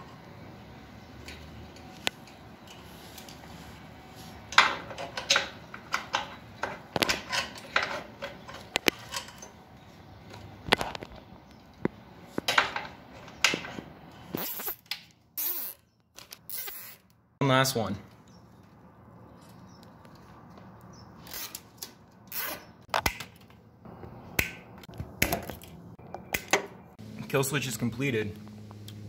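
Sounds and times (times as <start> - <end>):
hand tools clicking and knocking: 4.5 - 9.6.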